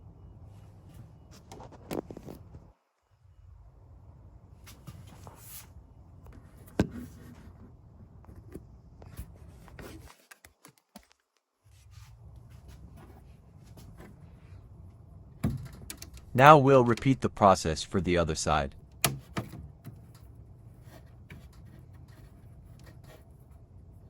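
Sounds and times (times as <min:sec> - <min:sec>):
low steady hum: 0:00.0 - 0:10.1, 0:11.6 - 0:24.0
plastic parts clicking and rubbing: 0:15.4 - 0:17.2.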